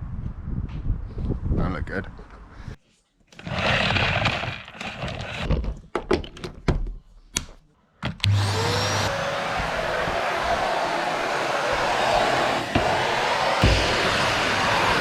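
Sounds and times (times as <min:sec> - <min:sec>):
motor whining and rushing: 0:08.2 - 0:15.0.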